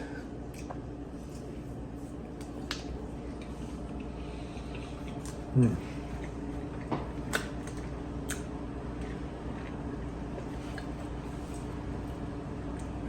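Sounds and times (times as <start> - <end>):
steady low hum: 0.0 - 13.0
eating clicks and smacks: 0.5 - 0.8, 6.1 - 9.8.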